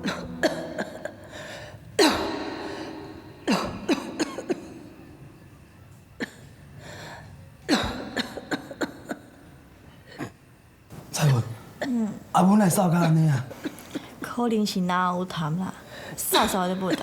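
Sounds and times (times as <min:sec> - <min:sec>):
woman coughing: 0:00.0 - 0:01.3, 0:02.0 - 0:02.6, 0:03.4 - 0:04.8, 0:06.2 - 0:06.5, 0:07.7 - 0:09.4, 0:11.8 - 0:12.2, 0:13.0 - 0:14.3, 0:16.3 - 0:17.0.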